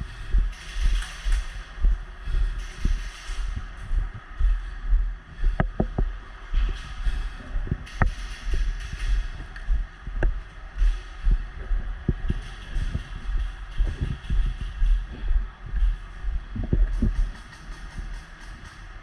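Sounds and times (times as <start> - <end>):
dull low thumps: 0.0 - 18.2.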